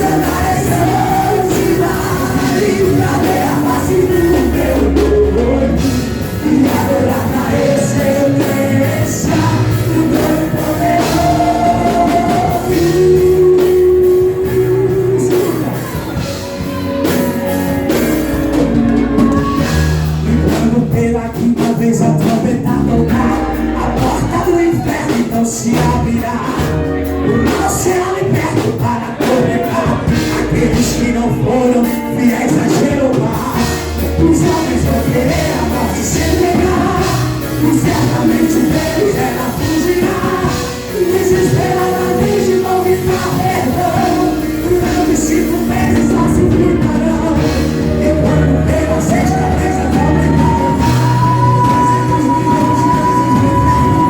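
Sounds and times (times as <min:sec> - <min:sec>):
person singing long notes: 0:00.0 - 0:54.0
rock band playing: 0:00.0 - 0:54.0.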